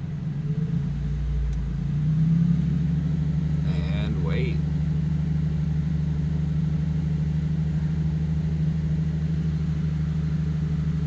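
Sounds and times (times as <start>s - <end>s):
car engine idling: 0.0s - 11.0s.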